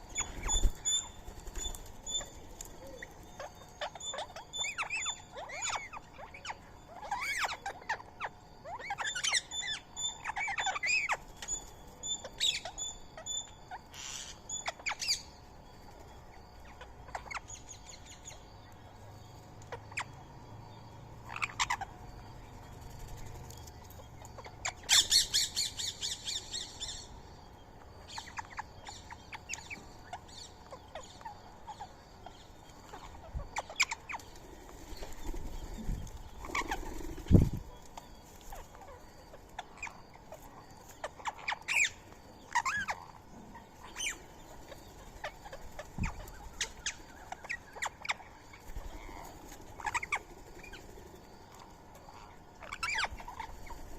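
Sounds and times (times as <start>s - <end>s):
bird rattling trill: 0.0s - 6.4s, 32.8s - 37.7s, 43.8s - 53.9s
birds chirping and squawking: 0.0s - 53.9s.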